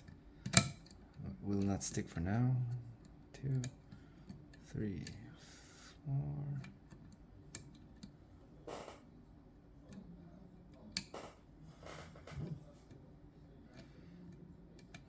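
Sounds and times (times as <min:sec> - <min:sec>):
lock pick clicks: 0:00.4 - 0:01.0.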